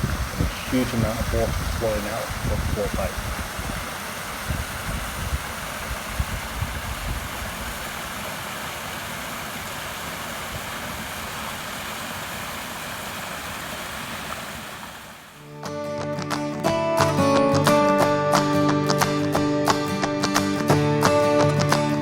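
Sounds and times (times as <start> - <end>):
water rushing out of a pipe: 0.0 - 15.4.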